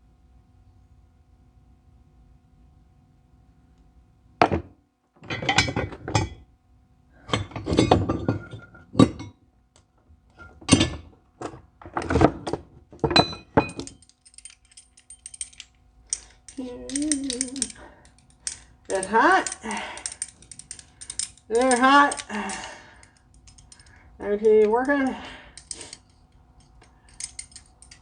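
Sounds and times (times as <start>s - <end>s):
faint steady hum: 0.0s - 28.0s
metal tools clanking: 5.2s - 6.4s, 7.2s - 9.4s, 10.3s - 28.0s.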